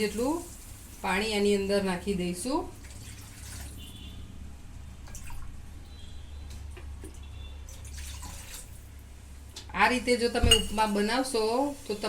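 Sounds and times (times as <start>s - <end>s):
water pouring into a pan: 0.0s - 1.2s, 2.8s - 3.9s.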